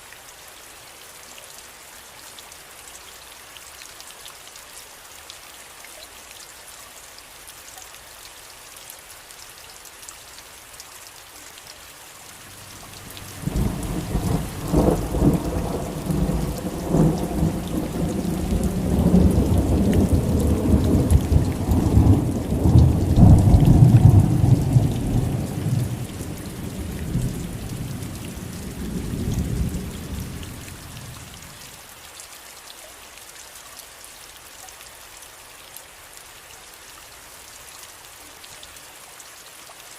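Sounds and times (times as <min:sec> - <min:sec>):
steady rain falling: 0:00.0 - 0:39.9
thunder rumbling: 0:12.8 - 0:30.8.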